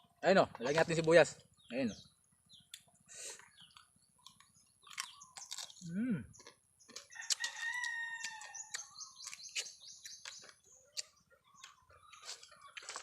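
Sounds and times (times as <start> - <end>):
person chewing crab: 2.7 - 13.0
rooster crowing: 7.1 - 8.7.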